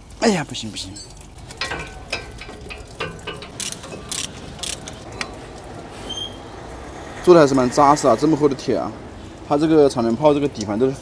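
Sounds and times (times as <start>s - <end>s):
ratchet wrench clicking: 1.2s - 5.5s.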